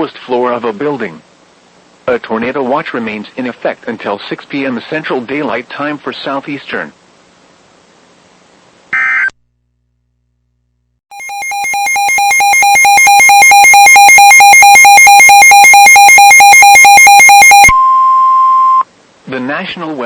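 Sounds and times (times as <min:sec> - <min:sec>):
rapidly pulsing electronic beep: 0:11.1 - 0:17.7.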